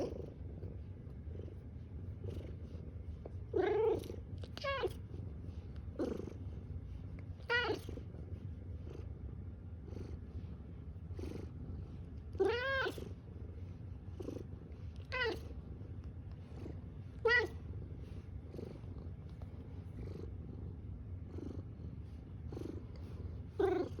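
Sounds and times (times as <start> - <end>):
cat purring: 0.0 - 24.0
cat meowing: 3.6 - 5.0, 7.4 - 7.9, 12.4 - 13.0, 15.0 - 15.5, 17.2 - 17.6.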